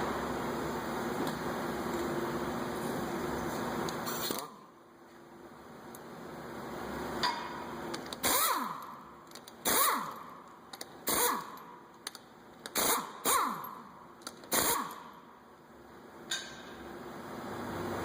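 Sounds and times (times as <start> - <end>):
impact wrench spinning: 7.9 - 15.2.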